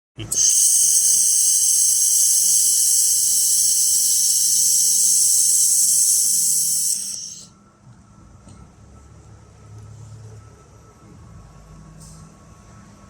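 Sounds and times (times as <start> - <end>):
laser welder hissing: 0.2 - 7.5.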